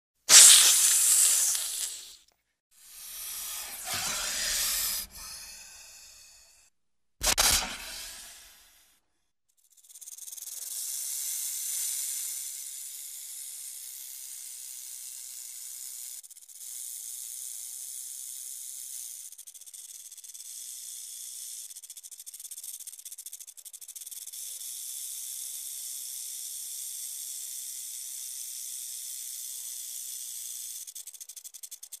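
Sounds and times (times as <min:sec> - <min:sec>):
snake hissing: 0:00.3 - 0:02.2, 0:02.8 - 0:08.8.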